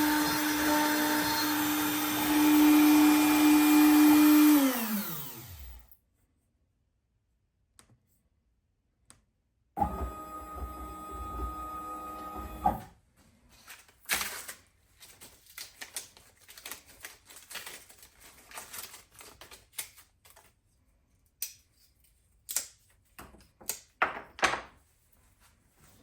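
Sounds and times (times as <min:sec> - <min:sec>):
wooden workpieces knocking and tapping: 0:23.2 - 0:24.8.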